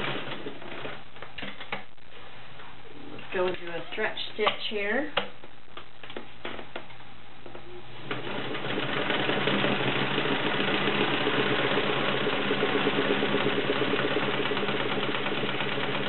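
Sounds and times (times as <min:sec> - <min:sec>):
sewing machine clattering: 0:00.0 - 0:01.0, 0:08.1 - 0:16.0.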